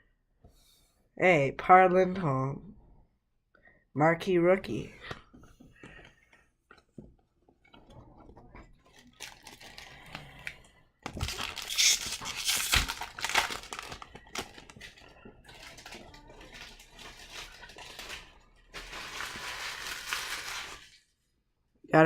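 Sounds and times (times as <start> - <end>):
foil wrapper crinkling and tearing: 8.8 - 21.0.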